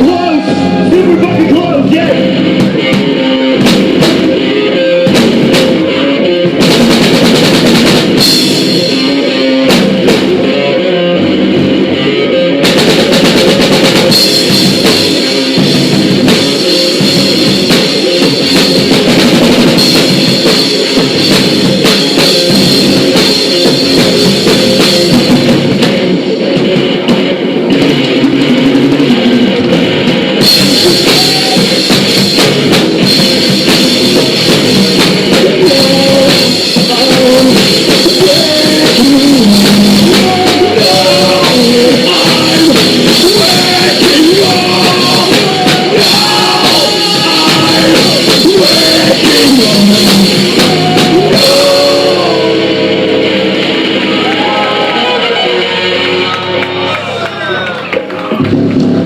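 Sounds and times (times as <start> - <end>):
rock band playing: 0.0 - 59.0
cymbals crashing: 30.4 - 56.3.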